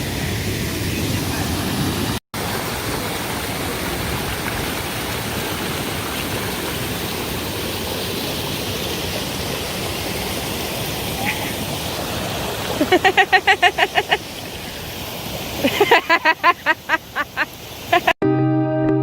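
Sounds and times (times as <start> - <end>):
waterfall rushing: 0.0 - 18.2.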